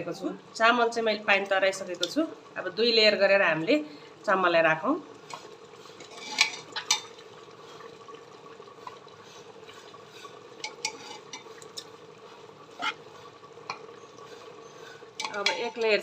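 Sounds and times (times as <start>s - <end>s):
spoon knocking and scraping pot: 6.0s - 7.1s, 10.6s - 11.9s, 12.7s - 13.0s, 15.2s - 15.9s.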